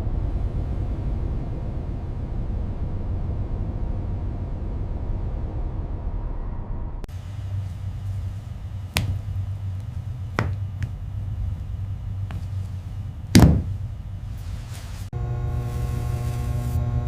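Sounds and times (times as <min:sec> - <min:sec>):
steady low hum: 0:00.0 - 0:17.0
heavy thud: 0:07.2 - 0:14.8
sharp knocks: 0:08.8 - 0:11.2, 0:13.3 - 0:13.9.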